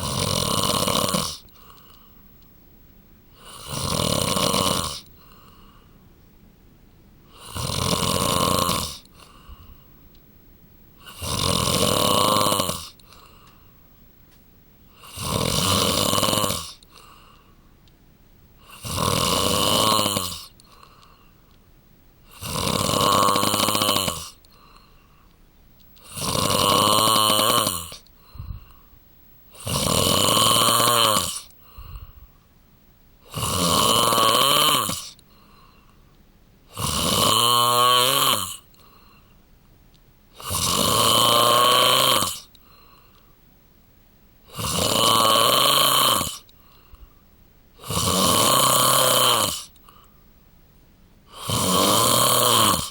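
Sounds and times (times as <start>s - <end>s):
man snoring: 0.0s - 1.9s, 3.3s - 5.7s, 7.3s - 9.6s, 11.0s - 13.5s, 14.9s - 17.3s, 18.6s - 21.1s, 22.3s - 24.9s, 26.0s - 28.7s, 29.5s - 32.2s, 33.2s - 35.5s, 36.7s - 39.1s, 40.3s - 43.0s, 44.5s - 46.8s, 47.8s - 50.0s, 51.3s - 52.9s.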